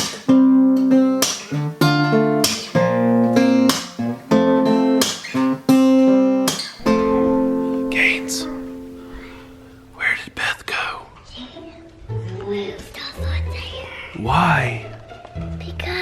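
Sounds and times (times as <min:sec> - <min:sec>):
acoustic guitar strumming chords: 0:00.0 - 0:10.1.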